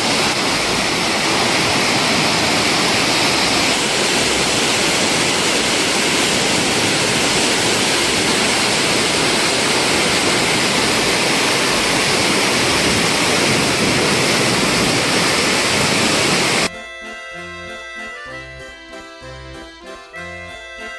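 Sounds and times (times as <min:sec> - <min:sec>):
waterfall rushing: 0:00.0 - 0:16.7.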